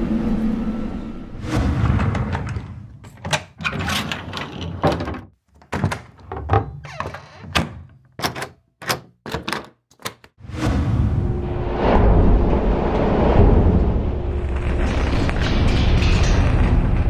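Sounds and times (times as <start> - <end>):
cabinet doors and drawers thunking: 1.8 - 10.2
latch clicks: 5.6 - 10.4
low rumble: 10.5 - 17.0.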